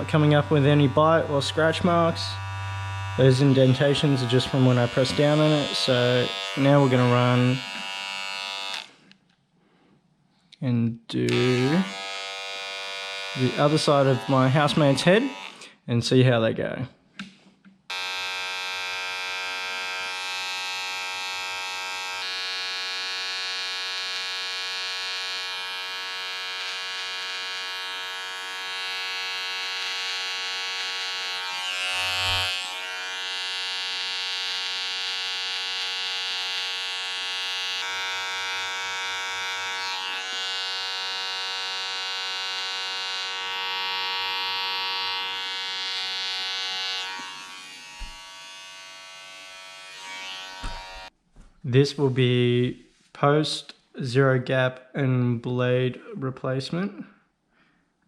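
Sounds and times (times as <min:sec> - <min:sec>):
electric hair trimmer buzzing: 0:00.0 - 0:09.0, 0:11.3 - 0:15.7, 0:17.9 - 0:51.1.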